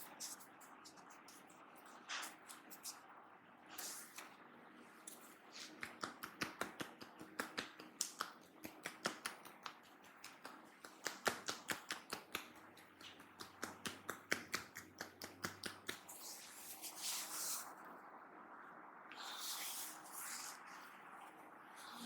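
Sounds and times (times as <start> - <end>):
hands tapping on head: 5.8 - 16.0.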